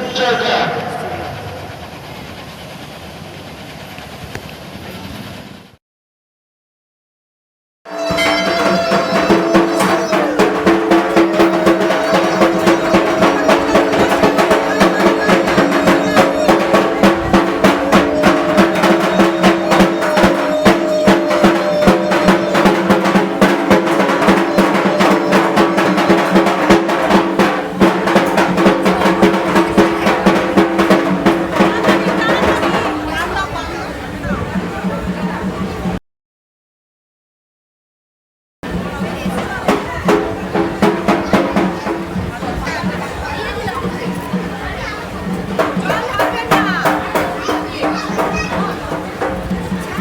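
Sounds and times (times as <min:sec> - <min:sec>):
sustained tones: 0:07.9 - 0:29.1
fast drumming: 0:07.9 - 0:33.7, 0:38.7 - 0:50.0.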